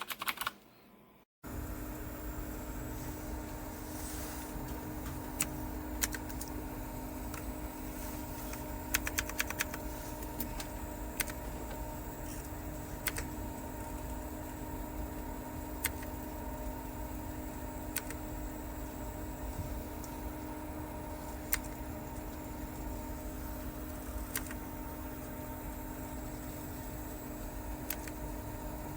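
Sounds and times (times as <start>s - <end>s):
mechanical keyboard clicks: 0.0s - 0.6s, 5.4s - 6.5s, 8.9s - 9.8s, 11.2s - 11.4s, 13.0s - 13.3s, 15.8s - 16.1s, 17.9s - 18.2s, 24.3s - 24.6s, 27.8s - 28.2s
steady low hum: 0.7s - 28.9s.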